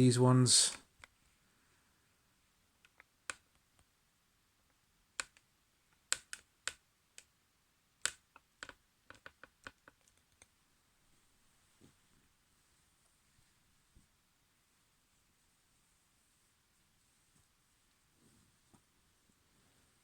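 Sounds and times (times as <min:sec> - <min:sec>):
light clicks and taps: 0:08.0 - 0:10.6.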